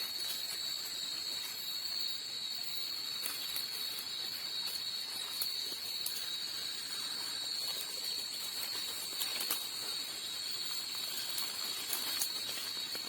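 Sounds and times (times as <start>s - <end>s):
night insects trilling: 0.0s - 13.0s.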